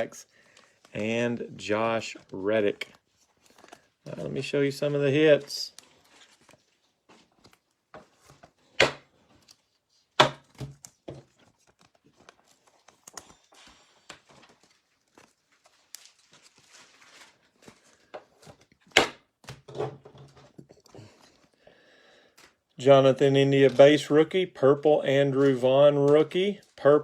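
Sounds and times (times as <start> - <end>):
cards clicking and rustling: 0.4 - 4.2, 5.7 - 19.7.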